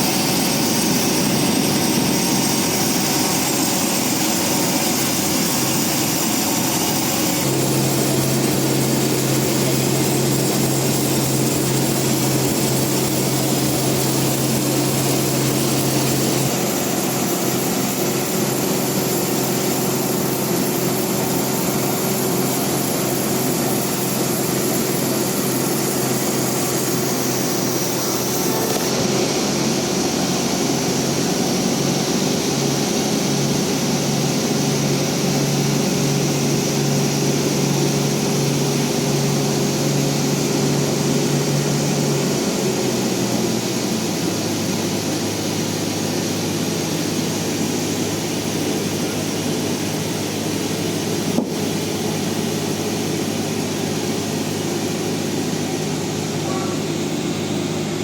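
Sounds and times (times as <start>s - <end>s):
sawmill bandsaw droning: 0.0s - 58.0s.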